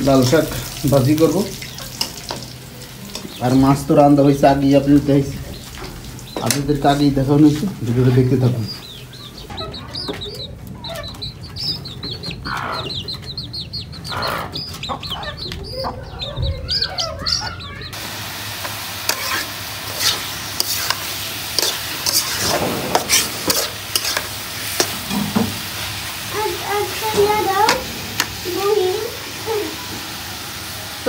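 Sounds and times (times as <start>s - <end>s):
vegetables sizzling in a pan: 0.0s - 9.1s, 17.9s - 31.0s
chickens clucking: 1.5s - 18.0s
spatula scraping a pan: 19.1s - 25.4s.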